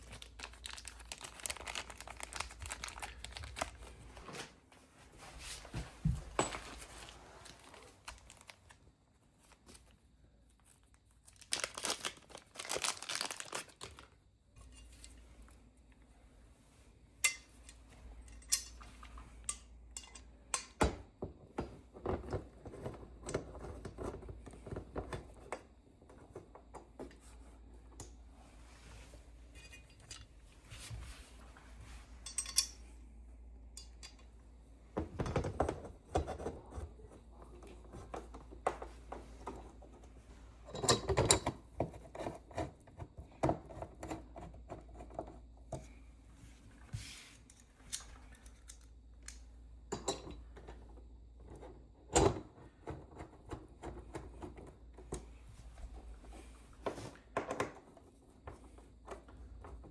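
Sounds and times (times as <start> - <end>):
screws and metal parts clinking: 32.2 - 32.8.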